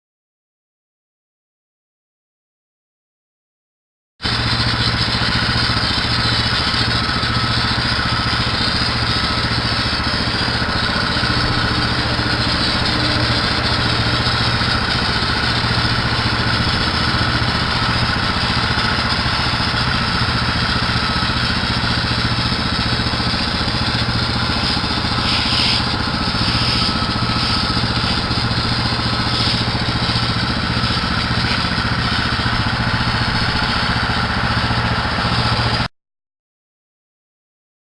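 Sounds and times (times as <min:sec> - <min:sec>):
small gasoline engine running: 0:04.2 - 0:35.9.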